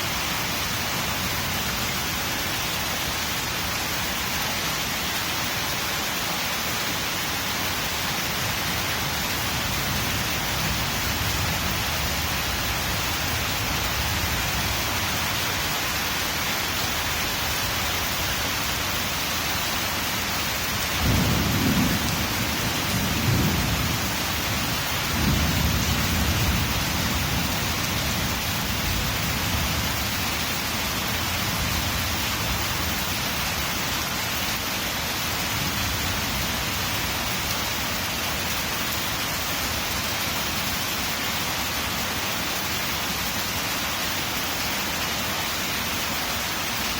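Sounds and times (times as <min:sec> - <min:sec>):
heavy rain: 0:00.0 - 0:46.9
thunder rumbling: 0:21.0 - 0:30.1.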